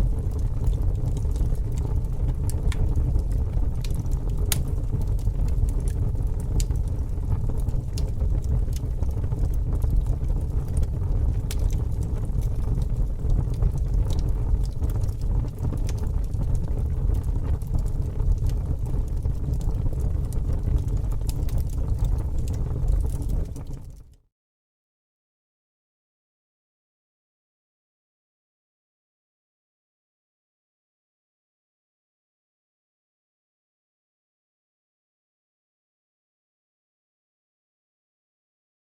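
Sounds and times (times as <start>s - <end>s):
fire crackling and popping: 0.0s - 24.2s.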